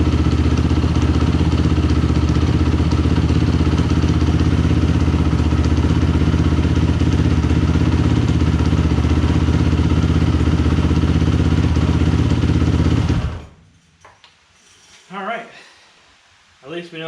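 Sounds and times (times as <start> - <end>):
motorcycle engine running steadily: 0.0 - 13.6.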